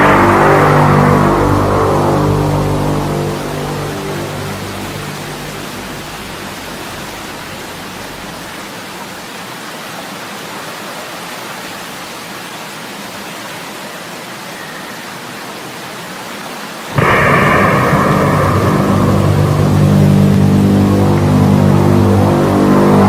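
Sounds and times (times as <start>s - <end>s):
low hum: 0.0s - 8.7s, 17.0s - 23.0s
steady even hiss: 0.0s - 9.3s, 14.2s - 23.0s.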